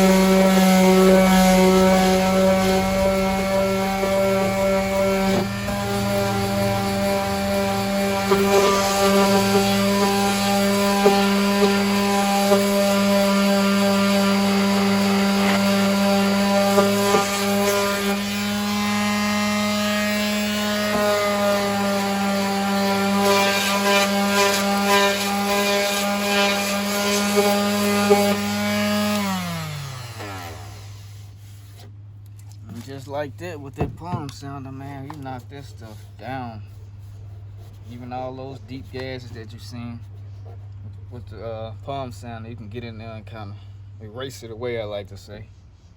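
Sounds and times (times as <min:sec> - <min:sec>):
electric sander sanding: 0:00.0 - 0:31.9.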